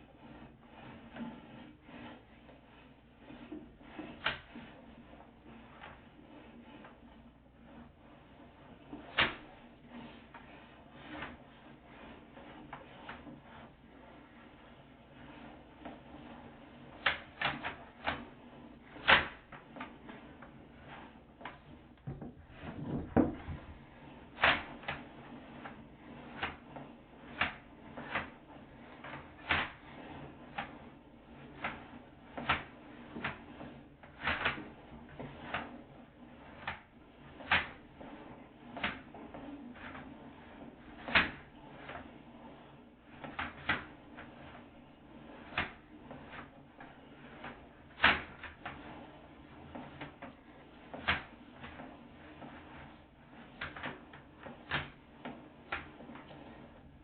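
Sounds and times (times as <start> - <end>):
camera knocking along a pipe: 22.0 - 23.8.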